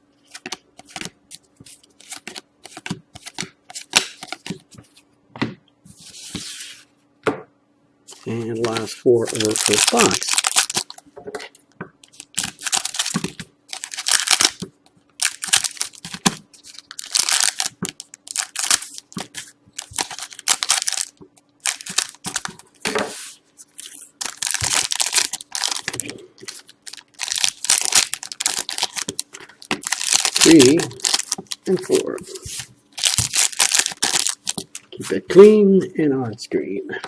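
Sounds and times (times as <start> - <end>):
wrappers crinkling: 8.1 - 11.0, 12.0 - 22.8, 23.6 - 35.4
card packs tearing open: 8.2 - 11.0, 12.1 - 22.6, 23.8 - 35.1.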